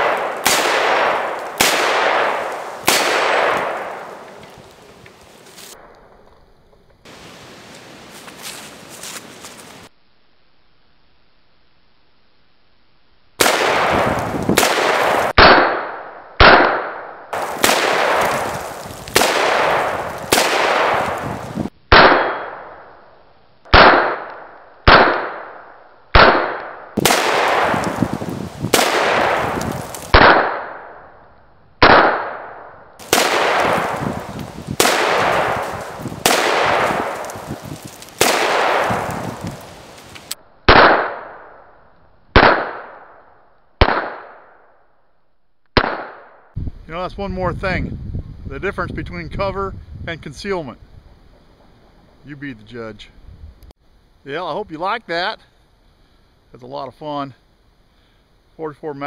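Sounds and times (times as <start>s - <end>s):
revolver shots with ringing echo: 21.9s - 22.8s.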